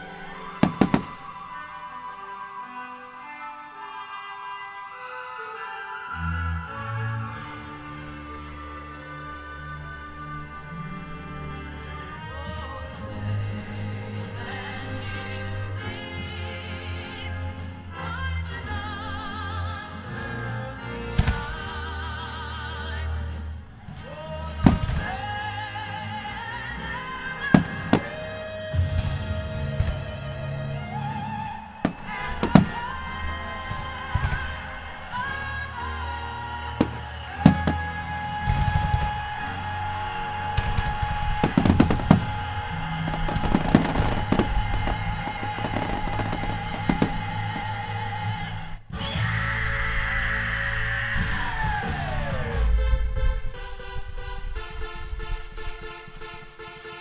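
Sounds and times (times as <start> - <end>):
background music: 0.0 - 57.0
firework bangs: 0.1 - 1.6, 21.2 - 22.0, 24.7 - 25.4, 27.5 - 29.1, 31.8 - 35.3, 36.8 - 38.7, 40.3 - 48.4.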